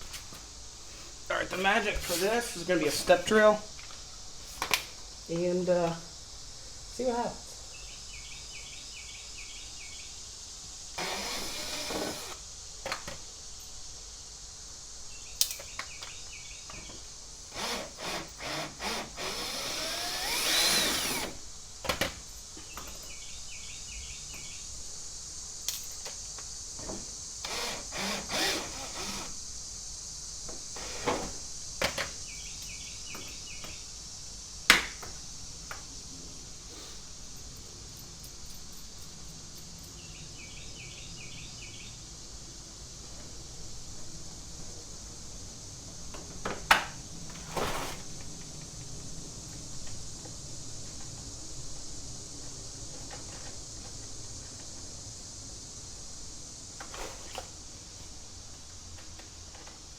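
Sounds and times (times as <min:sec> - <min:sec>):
power drill drilling: 0:11.0 - 0:12.4, 0:17.5 - 0:21.4, 0:27.4 - 0:29.4, 0:30.8 - 0:31.3.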